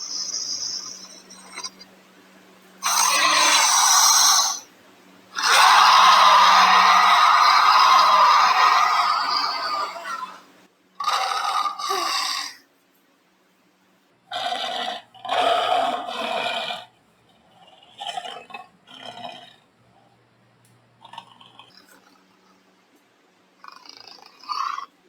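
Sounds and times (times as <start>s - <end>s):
faint film soundtrack hum: 0.0s - 25.0s
cartoon dog roaring: 2.8s - 4.7s, 5.4s - 12.6s, 14.3s - 16.9s.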